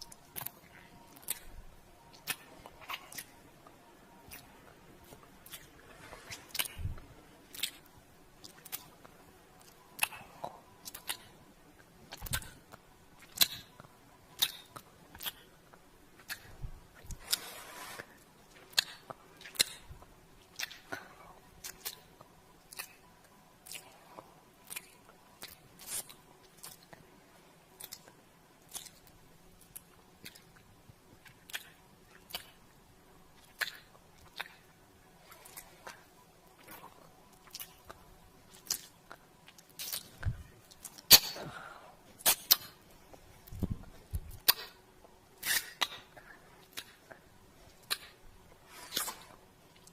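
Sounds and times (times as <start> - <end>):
wet lip smacks: 16.2 - 17.2, 22.7 - 23.0, 28.7 - 30.6, 31.2 - 32.6, 33.4 - 34.6, 38.5 - 41.4, 42.2 - 42.8, 43.6 - 44.8, 45.4 - 47.2, 47.8 - 48.2.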